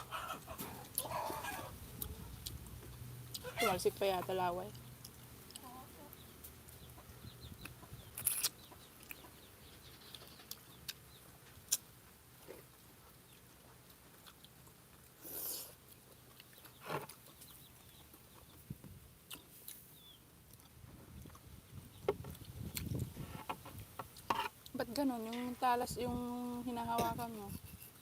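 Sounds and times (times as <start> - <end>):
chickens clucking: 0.0 - 13.5
small clicks from eating: 15.8 - 19.9.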